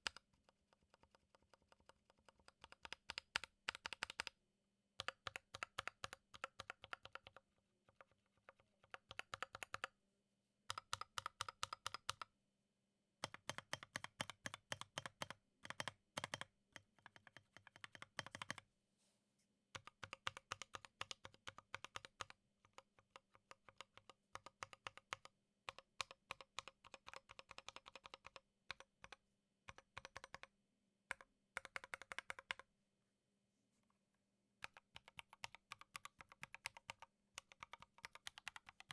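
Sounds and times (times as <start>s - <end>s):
mechanical keyboard typing: 2.5s - 4.3s, 13.2s - 16.5s, 17.1s - 18.6s, 23.5s - 30.5s, 34.6s - 38.9s.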